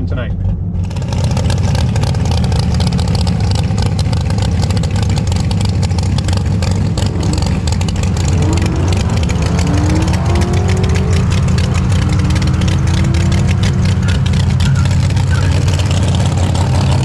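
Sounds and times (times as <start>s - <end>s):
race car engine idling: 0.0s - 17.0s
rising engine note: 6.5s - 17.0s.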